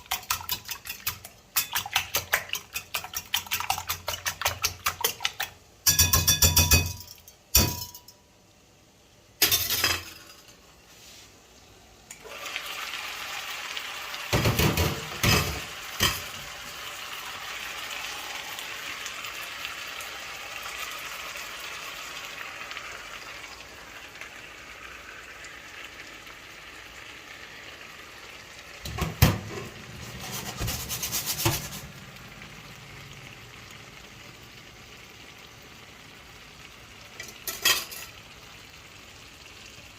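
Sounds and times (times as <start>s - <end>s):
pan sizzling: 0.0s - 8.2s, 12.1s - 39.9s
stirring knocks and clinks: 0.0s - 8.2s
utensils and dishes clattering: 0.0s - 8.2s, 9.4s - 10.6s, 14.4s - 16.4s, 37.2s - 38.2s.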